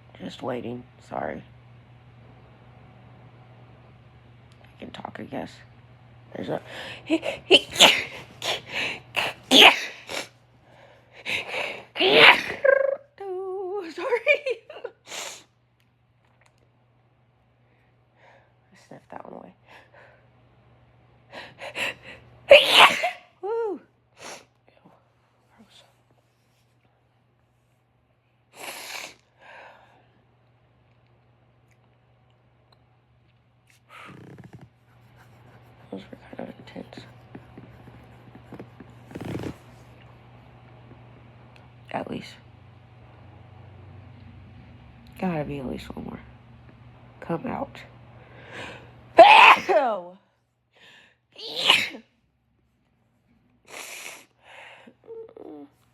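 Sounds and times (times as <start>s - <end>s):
woman sneezing: 7.1s - 10.3s, 11.4s - 12.8s, 22.5s - 23.4s, 49.2s - 49.9s, 51.4s - 52.1s.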